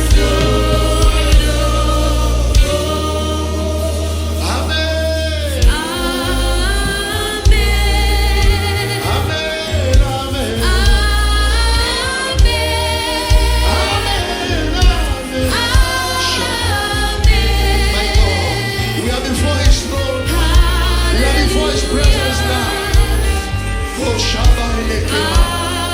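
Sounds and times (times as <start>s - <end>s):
drum hits: 0.0s - 3.2s
bass line: 0.0s - 25.9s
choir singing: 0.0s - 25.9s.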